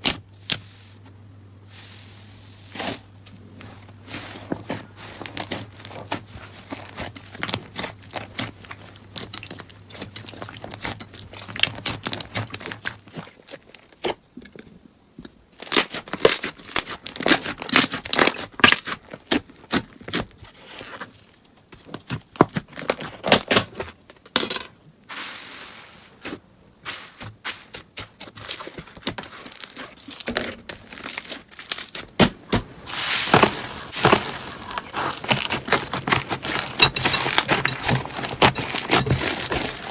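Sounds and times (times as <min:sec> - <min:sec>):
slime crackling and squelching: 0:02.2 - 0:14.2, 0:15.6 - 0:21.2, 0:27.6 - 0:39.9.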